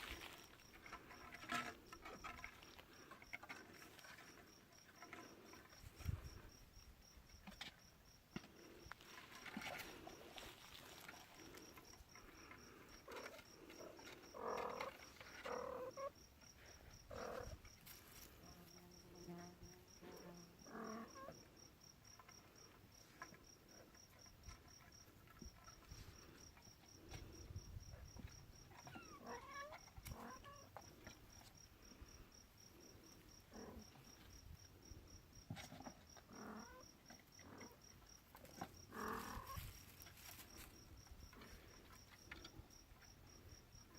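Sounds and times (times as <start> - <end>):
rustling movements: 0.0 - 4.4, 38.9 - 41.8.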